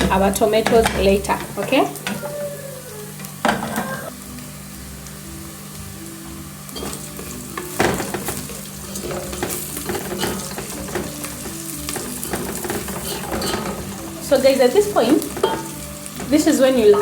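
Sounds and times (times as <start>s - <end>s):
onions sizzling in hot oil: 2.8s - 17.0s
spoon stirring and scraping pot: 6.7s - 17.0s.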